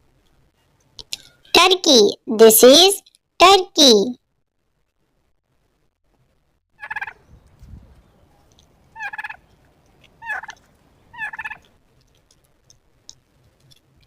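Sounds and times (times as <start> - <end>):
turkey gobbling: 6.8 - 7.2, 9.0 - 9.4, 10.2 - 11.6.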